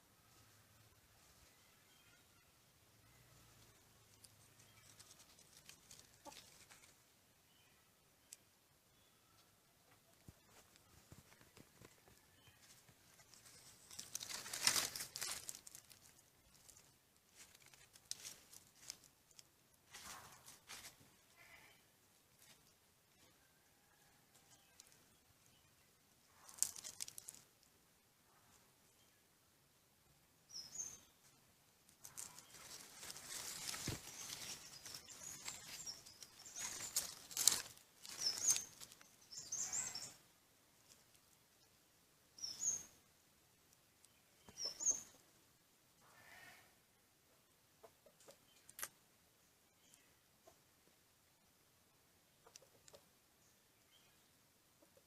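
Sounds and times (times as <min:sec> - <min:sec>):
small bird chirping: 0:01.2 - 0:20.2, 0:30.4 - 0:45.4, 0:47.8 - 0:50.8, 0:52.3 - 0:55.0
crinkling rustling: 0:04.1 - 0:07.0, 0:10.2 - 0:21.0, 0:26.3 - 0:27.6, 0:31.9 - 0:40.1.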